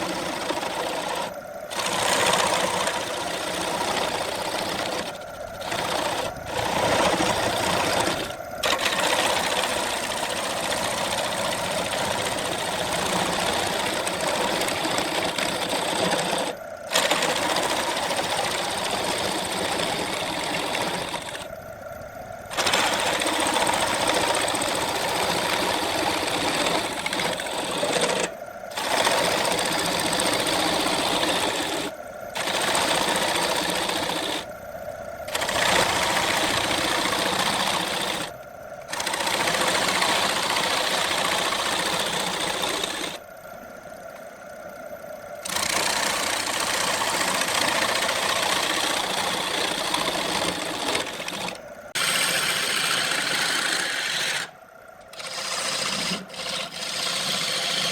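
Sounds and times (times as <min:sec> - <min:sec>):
lathe tool scraping wood: 0:00.0 - 0:21.5, 0:22.5 - 0:34.5, 0:35.3 - 0:43.2, 0:45.4 - 0:57.9.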